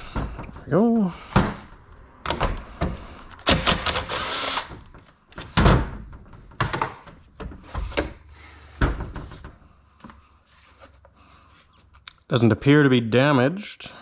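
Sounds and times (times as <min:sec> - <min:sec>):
knocks and clunks of parts: 0:00.0 - 0:00.7, 0:01.3 - 0:10.2
impact driver spinning: 0:03.4 - 0:04.8.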